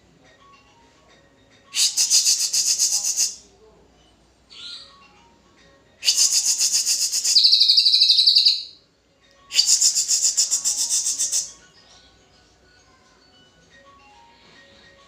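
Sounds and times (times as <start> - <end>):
bird chattering trills: 6.1 - 8.7, 9.6 - 11.5.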